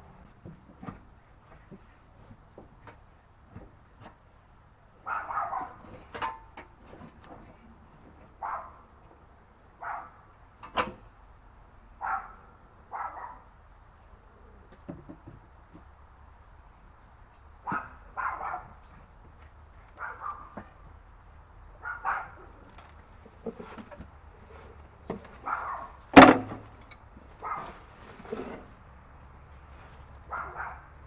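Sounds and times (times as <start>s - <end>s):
dog barking: 5.0s - 5.8s, 8.4s - 8.8s, 9.8s - 10.2s, 12.0s - 13.5s, 17.6s - 18.8s, 20.0s - 20.7s, 21.8s - 22.5s, 25.4s - 26.0s, 27.4s - 27.8s, 30.3s - 30.9s.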